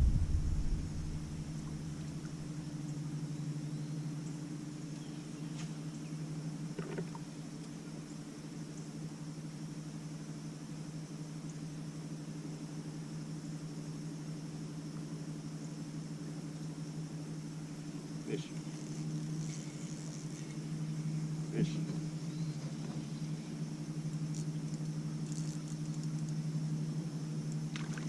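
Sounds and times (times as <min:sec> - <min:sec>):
boat motor humming: 0:00.0 - 0:04.1, 0:17.8 - 0:25.2.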